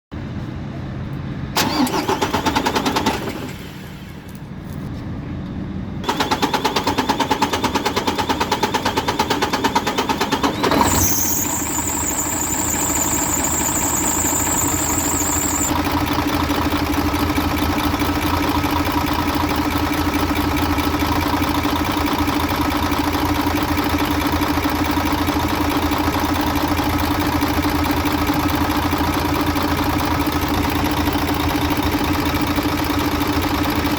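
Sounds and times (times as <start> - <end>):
diesel engine cranking: 1.6 - 4.4, 6.0 - 33.9
diesel engine idling: 9.2 - 33.9
high steady tone: 10.8 - 15.7.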